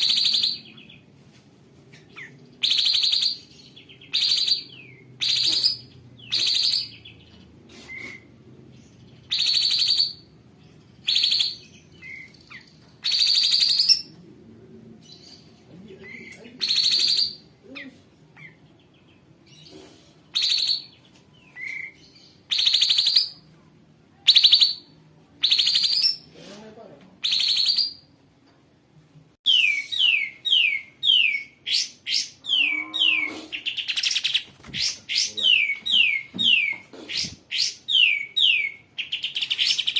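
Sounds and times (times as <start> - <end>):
bird harsh rasping calls: 29.5 - 39.9.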